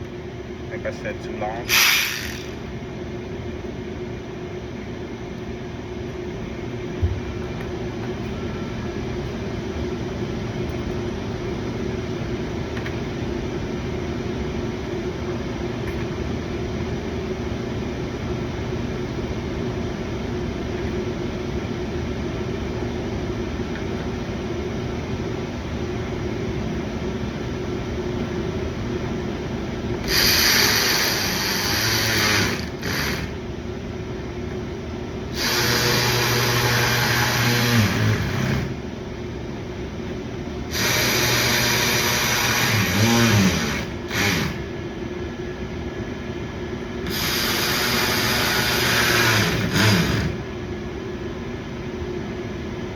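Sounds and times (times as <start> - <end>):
steady background hum: 0.0 - 52.9
power ratchet running: 1.7 - 2.6, 30.0 - 33.4, 35.3 - 38.8, 40.7 - 44.7, 47.0 - 50.4.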